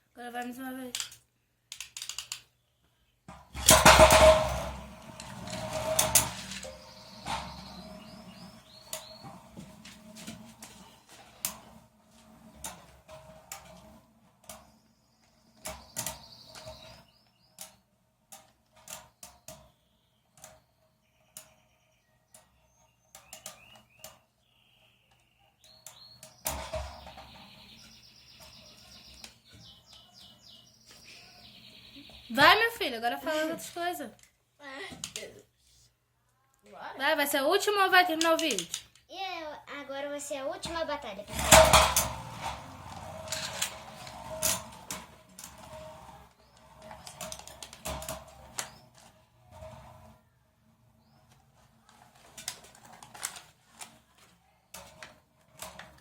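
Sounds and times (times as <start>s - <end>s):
birds chirping: 4.6s - 11.4s, 14.6s - 17.9s, 19.0s - 34.0s, 40.0s - 50.1s.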